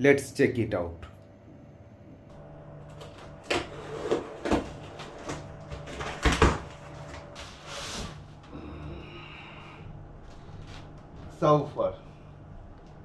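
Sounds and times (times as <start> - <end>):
cardboard rustling: 2.9 - 8.2
cardboard scraping slide: 3.0 - 8.3.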